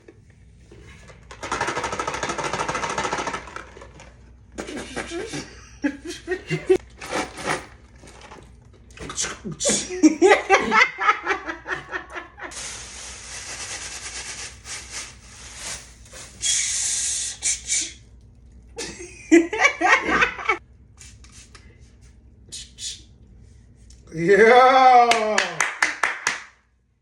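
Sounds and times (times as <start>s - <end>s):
person laughing: 4.6s - 6.8s, 9.2s - 12.5s, 18.8s - 20.6s
person hissing through mouth: 12.5s - 18.0s, 22.5s - 23.1s.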